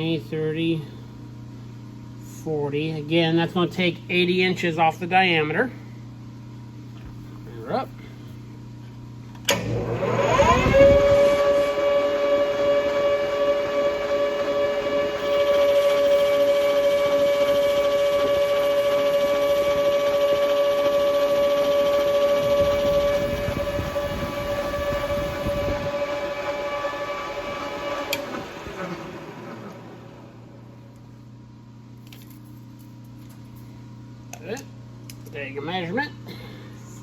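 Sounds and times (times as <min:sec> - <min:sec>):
lathe spindle whine: 0:09.5 - 0:30.7
lathe cutting metal: 0:09.7 - 0:29.8.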